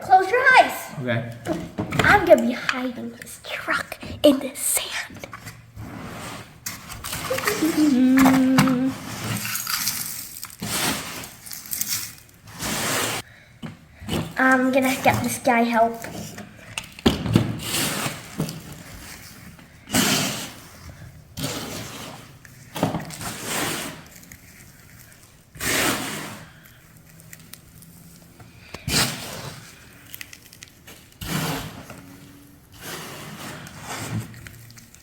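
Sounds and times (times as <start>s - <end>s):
sand scraping: 12.5s - 13.2s.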